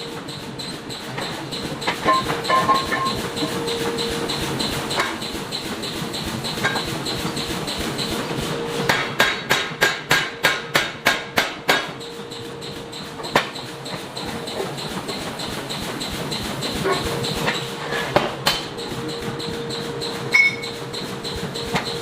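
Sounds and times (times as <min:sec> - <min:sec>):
steady hum: 0:00.0 - 0:22.0
hammer striking iron: 0:01.2 - 0:05.3, 0:06.6 - 0:06.9, 0:08.8 - 0:15.2, 0:16.8 - 0:21.9.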